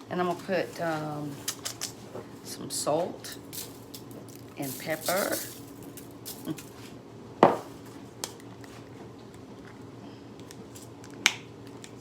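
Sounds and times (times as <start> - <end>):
low room hum: 0.0 - 12.0
kitchen items knocking on counter: 7.4 - 7.8.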